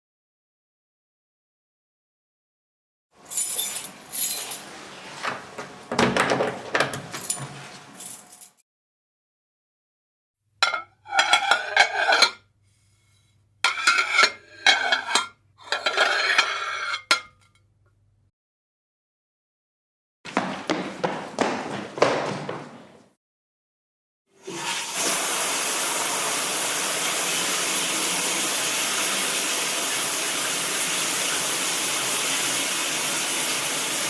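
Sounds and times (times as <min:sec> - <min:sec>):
dishes and cutlery clinking: 0:03.2 - 0:08.6, 0:10.6 - 0:12.4, 0:13.7 - 0:17.5.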